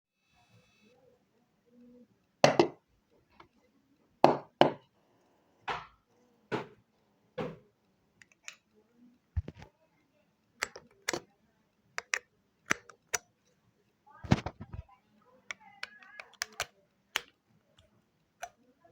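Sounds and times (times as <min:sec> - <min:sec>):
sharp clicks and knocks: 0:09.4 - 0:09.7, 0:12.0 - 0:13.3.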